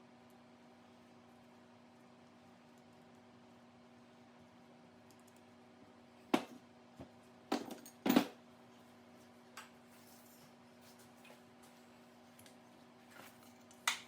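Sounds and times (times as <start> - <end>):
faint steady hum: 0.0 - 14.0
hard objects knocking and clattering: 7.5 - 8.4.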